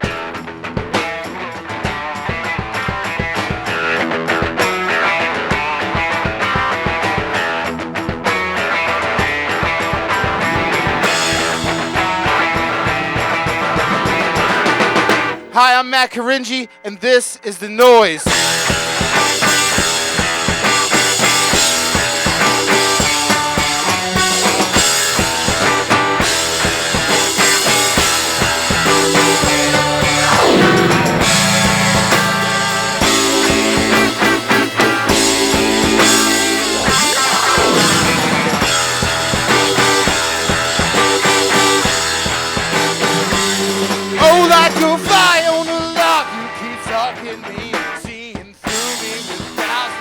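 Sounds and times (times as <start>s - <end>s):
live rock band playing: 0.0s - 50.0s
falling guitar slide: 18.3s - 46.2s.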